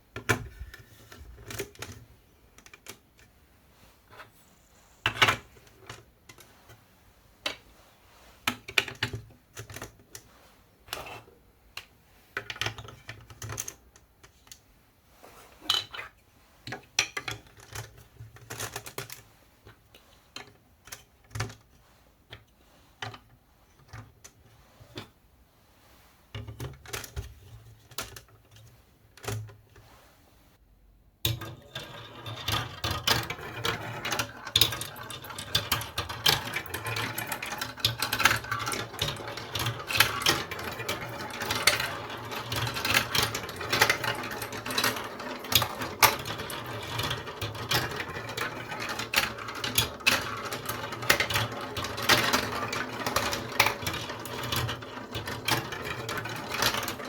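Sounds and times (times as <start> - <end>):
marbles rattling through toy track: 31.3 - 57.0.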